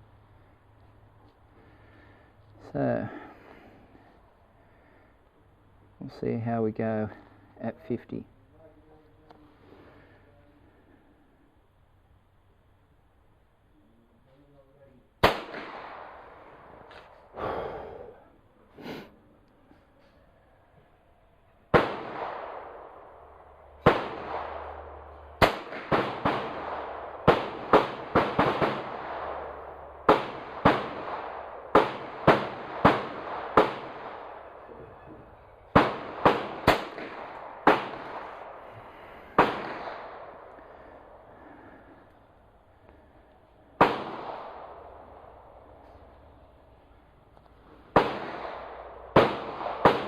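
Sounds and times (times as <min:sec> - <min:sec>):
gunshots with echo: 0:15.2 - 0:16.9, 0:21.7 - 0:41.8, 0:43.8 - 0:45.8, 0:47.9 - 0:50.0.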